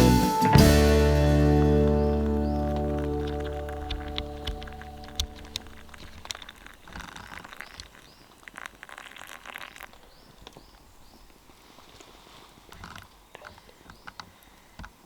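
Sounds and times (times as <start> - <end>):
twigs crackling and popping: 1.9 - 11.4.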